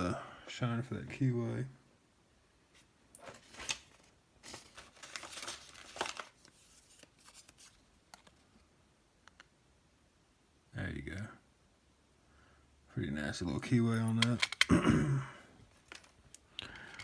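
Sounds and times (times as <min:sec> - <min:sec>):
small objects rustling and clicking: 0:02.8 - 0:08.7, 0:14.1 - 0:14.7, 0:15.7 - 0:17.0.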